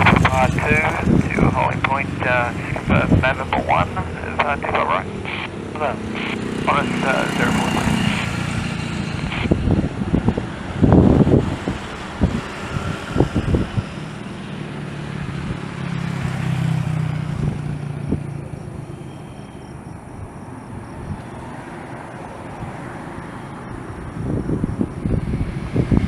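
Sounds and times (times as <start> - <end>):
outdoor rumble: 0.0 - 19.0
engine passing by: 0.0 - 19.5, 21.0 - 26.0.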